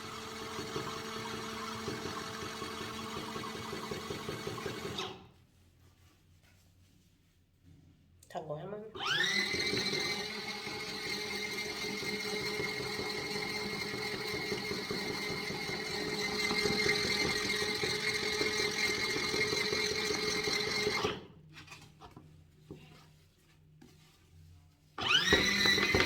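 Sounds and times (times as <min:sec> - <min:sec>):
washing machine motor whining: 0:09.0 - 0:21.3, 0:25.0 - 0:26.0.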